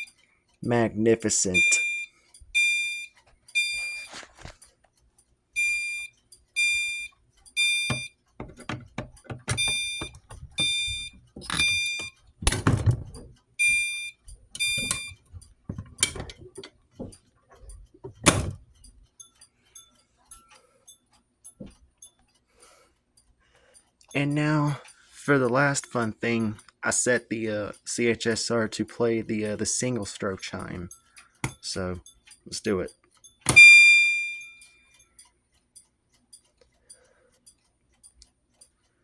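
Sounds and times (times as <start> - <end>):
sharp knocks and thumps: 7.9 - 13.4, 14.7 - 17.2
alarm horn honking: 33.5 - 34.4.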